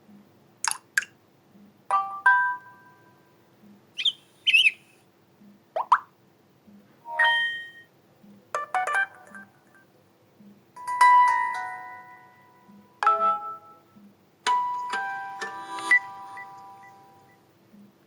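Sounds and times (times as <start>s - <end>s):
electronic alert chimes: 7.1s - 7.8s.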